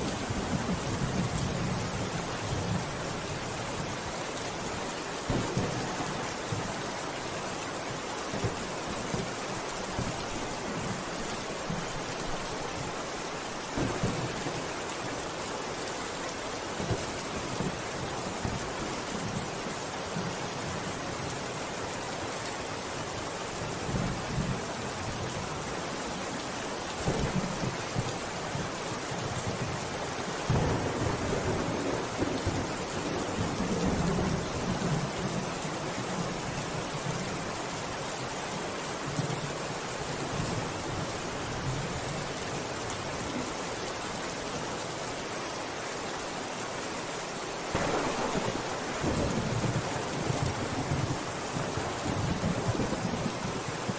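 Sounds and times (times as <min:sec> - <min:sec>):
steady rain hissing: 0:00.0 - 0:53.9
low rumble of thunder: 0:47.7 - 0:53.9.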